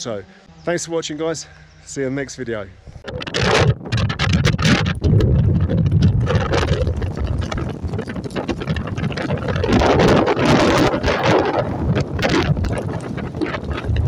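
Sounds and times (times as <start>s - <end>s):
wind buffeting microphone: 2.9s - 14.0s.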